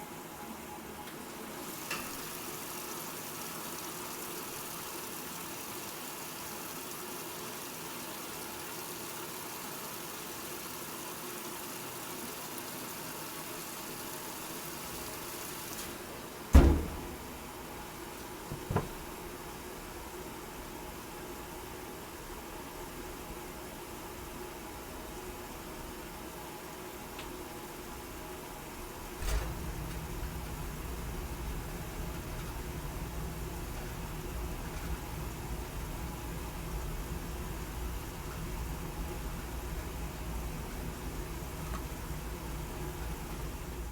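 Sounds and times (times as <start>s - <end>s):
washing machine humming: 0.0s - 43.9s
loud clunk: 16.5s - 17.4s, 18.5s - 19.0s, 29.2s - 31.6s
small knocks: 18.5s - 19.1s.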